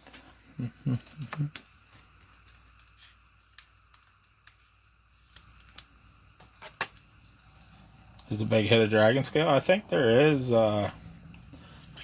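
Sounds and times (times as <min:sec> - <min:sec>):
cards being flipped through: 0:00.9 - 0:07.1.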